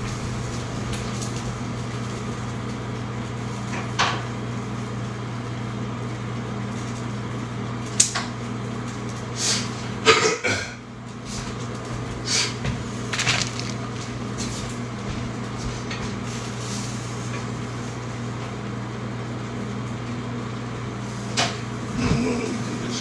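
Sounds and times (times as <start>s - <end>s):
kitchen appliance humming: 11.8s - 14.9s.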